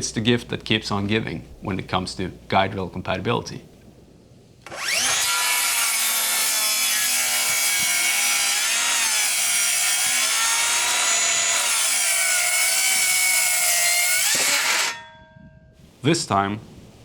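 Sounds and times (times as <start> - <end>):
circular saw cutting wood: 4.6 - 15.0.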